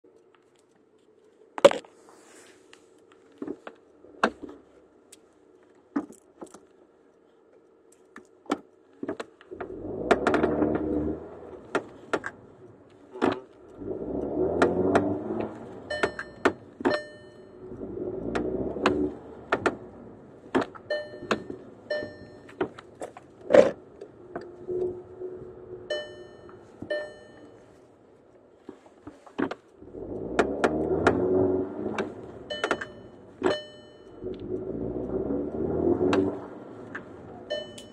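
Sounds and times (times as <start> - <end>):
car engine accelerating: 9.5 - 27.9, 29.8 - 37.9
sharp knocks and clicks: 18.3 - 19.8, 30.3 - 31.2, 31.9 - 33.7.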